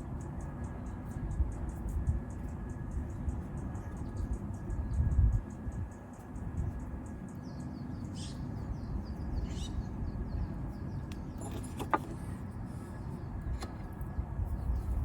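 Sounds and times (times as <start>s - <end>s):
light metallic clinks: 11.3s - 12.1s.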